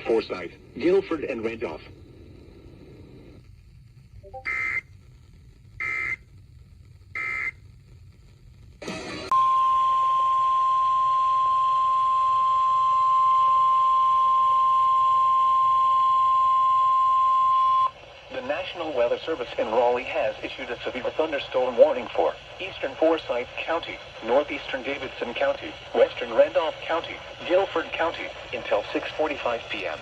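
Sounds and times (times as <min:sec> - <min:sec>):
loud steady alert tone: 0:04.2 - 0:04.8.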